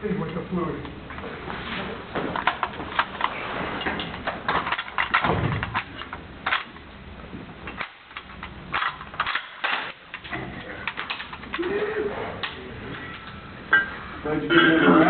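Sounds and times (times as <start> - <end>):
gun parts clicking and clanking: 2.2 - 6.9, 7.7 - 11.7.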